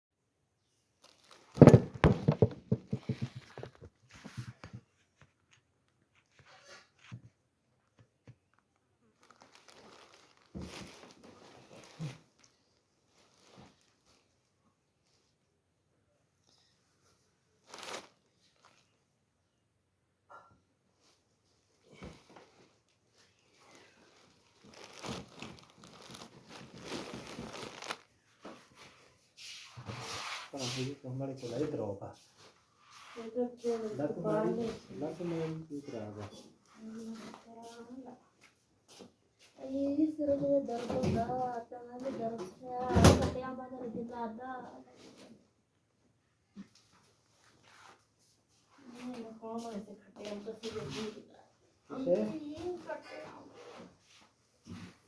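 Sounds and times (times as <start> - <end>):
bedding rustling and crinkling: 1.0 - 5.5, 9.2 - 15.2, 17.6 - 18.9, 21.0 - 29.3.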